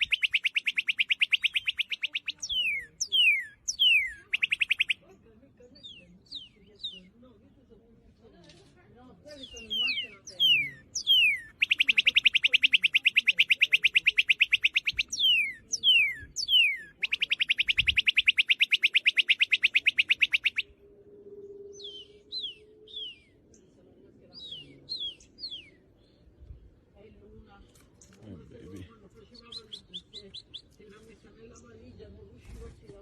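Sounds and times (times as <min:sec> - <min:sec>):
bird making rapid beeps: 0:00.0 - 0:05.0, 0:09.4 - 0:20.7
bird whistling: 0:00.0 - 0:05.0, 0:09.4 - 0:20.8, 0:21.4 - 0:23.4, 0:24.4 - 0:25.8.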